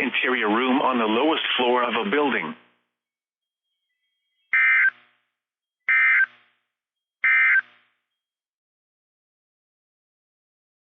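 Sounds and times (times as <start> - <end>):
digital data tone bursts: 4.4 - 5.0.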